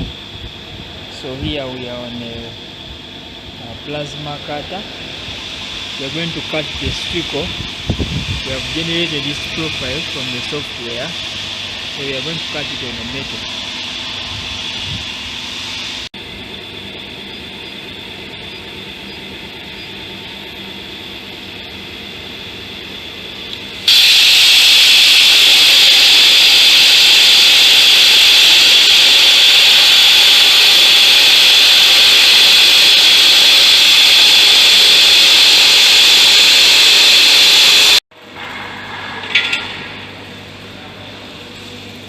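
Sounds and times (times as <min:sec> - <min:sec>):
machine hum: 0:00.0 - 0:42.0
plasma cutter hissing: 0:05.9 - 0:13.5, 0:23.8 - 0:38.0.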